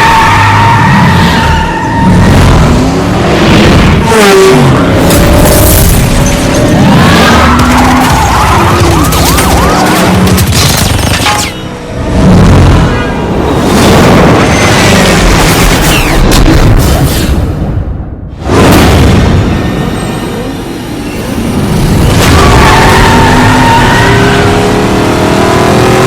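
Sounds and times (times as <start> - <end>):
gliding siren-like tones: 0.0 - 3.2, 22.2 - 24.9
car engines revving: 0.0 - 10.5, 19.6 - 26.0
tires skidding: 22.1 - 24.9.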